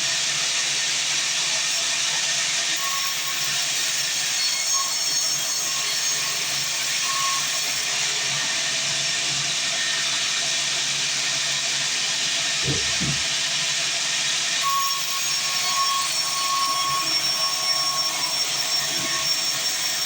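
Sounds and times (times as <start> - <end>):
bandsaw cutting log: 12.6 - 13.4.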